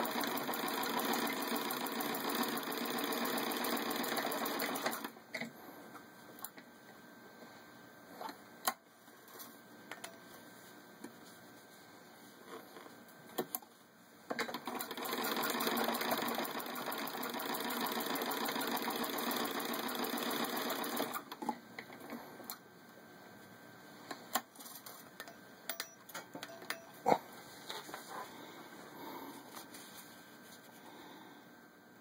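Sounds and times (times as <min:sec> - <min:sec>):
sewing machine running: 0:00.0 - 0:05.1, 0:14.5 - 0:21.4.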